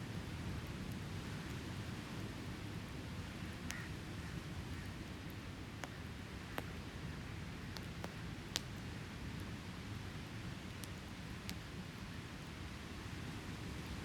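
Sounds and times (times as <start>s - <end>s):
campfire crackling and popping: 5.0s - 9.6s, 10.6s - 11.8s.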